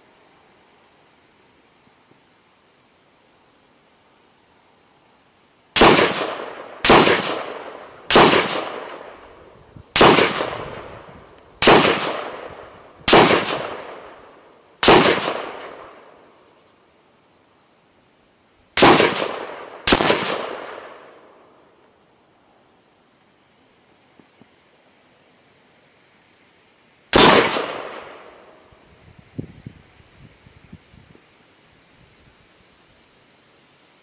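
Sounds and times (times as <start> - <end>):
rifle shots ringing: 5.8 - 9.2, 10.0 - 11.0, 11.6 - 14.2, 14.8 - 16.0, 18.8 - 21.1, 27.1 - 28.6.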